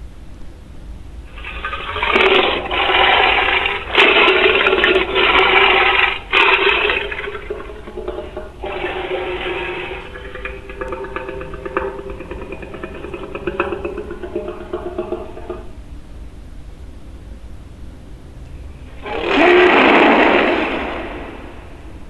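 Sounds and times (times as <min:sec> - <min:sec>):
rushing water-like noise: 0:01.3 - 0:15.8, 0:18.8 - 0:22.0.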